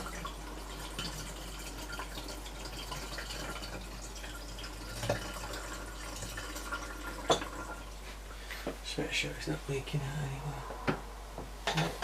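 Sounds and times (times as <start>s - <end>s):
water pouring and splashing: 0.0s - 8.2s.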